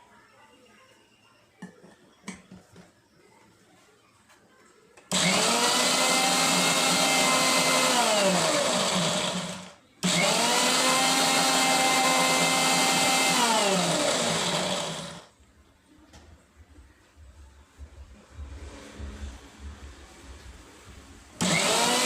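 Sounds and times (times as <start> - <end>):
mixer grinder motor whirring: 5.1 - 15.3, 21.4 - 22.0.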